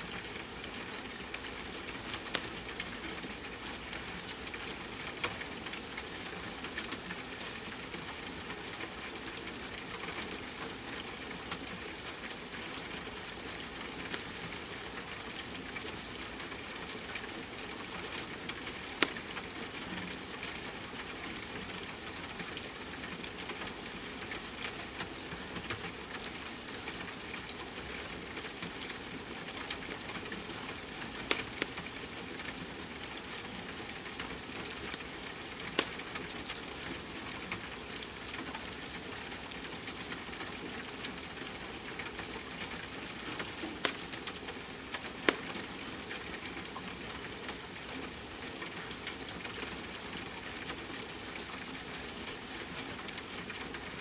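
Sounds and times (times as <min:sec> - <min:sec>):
wood fire crackling and popping: 0:19.0 - 0:19.3, 0:31.3 - 0:31.8, 0:35.6 - 0:36.0, 0:43.5 - 0:44.3.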